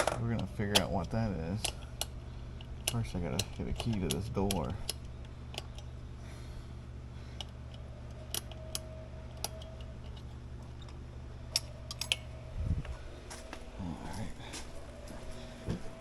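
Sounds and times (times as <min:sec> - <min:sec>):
keys and door lock clicking: 0:00.0 - 0:05.9, 0:07.4 - 0:12.3
low hum: 0:00.0 - 0:16.0.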